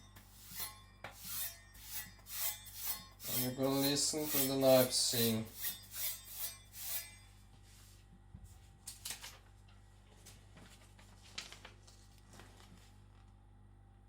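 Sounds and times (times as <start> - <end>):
cleaver slicing strokes: 0.3 - 7.2.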